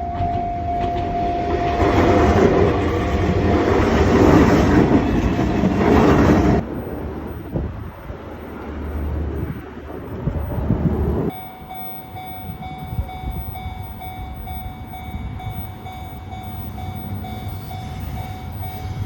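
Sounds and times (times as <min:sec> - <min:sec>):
level crossing warning bell: 0:00.0 - 0:06.1, 0:11.3 - 0:19.0
train rumbling past: 0:00.0 - 0:19.0.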